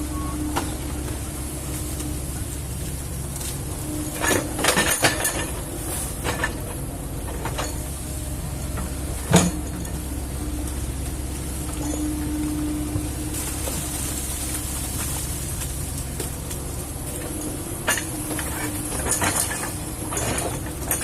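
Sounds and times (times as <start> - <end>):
excavator diesel engine running: 0.0 - 21.0
metallic clanks: 4.1 - 8.1.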